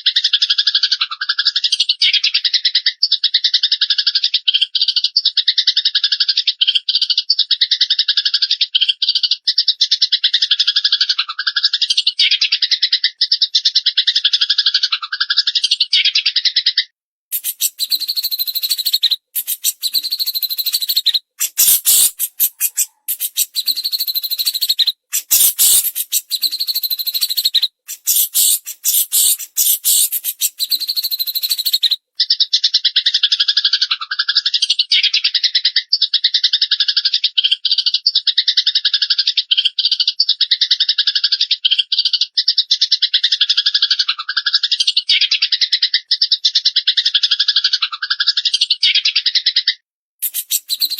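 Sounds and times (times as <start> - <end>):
sparrows chattering harshly: 17.3 - 32.5, 50.2 - 50.9
fast bird trill: 17.3 - 32.6, 50.2 - 50.9.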